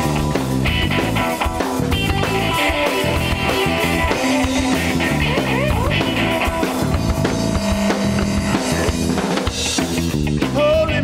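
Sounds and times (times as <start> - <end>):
bass: 0.0 - 11.0
drum kit: 0.0 - 11.0
electric guitar: 0.0 - 11.0.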